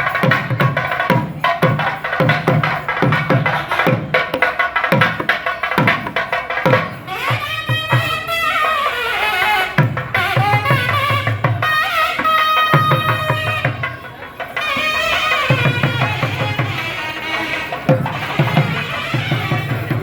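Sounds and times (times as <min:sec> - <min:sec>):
rapid hand drum strokes: 0:00.0 - 0:20.0
gliding wind instrument melody: 0:07.0 - 0:20.0.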